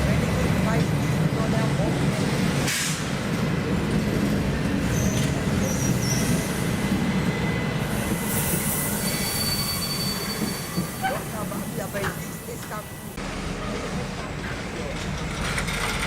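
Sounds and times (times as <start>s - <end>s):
train wheels squealing: 4.8s - 13.2s.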